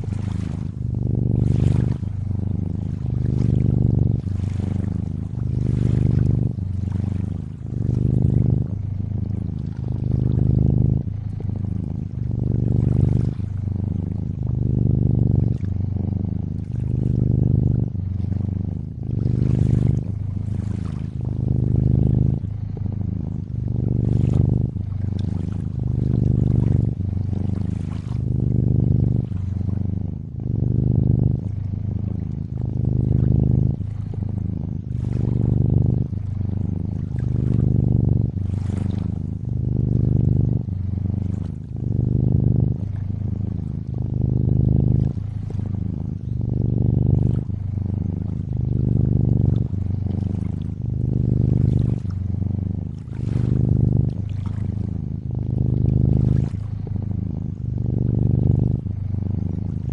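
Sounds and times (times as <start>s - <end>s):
cat purring: 0.0s - 59.9s.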